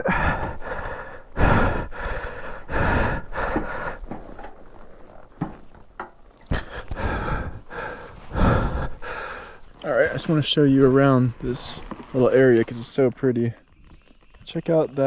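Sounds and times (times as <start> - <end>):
person breathing hard: 0.0 - 4.4, 6.5 - 9.7.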